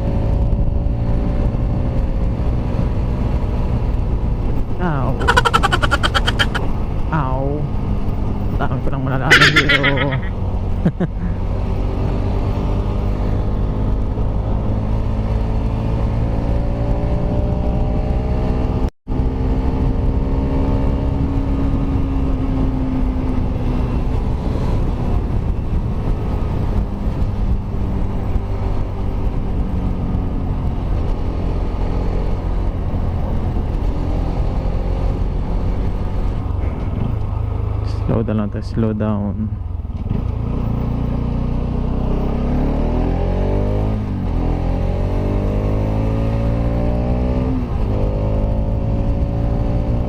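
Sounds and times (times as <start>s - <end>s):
heavy wind noise: 0.0s - 38.0s.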